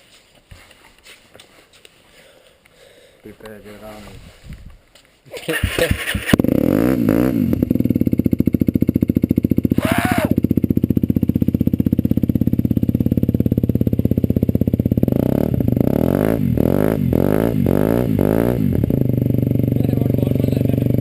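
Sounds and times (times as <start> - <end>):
motorcycle engine revving and idling: 5.5 - 21.0.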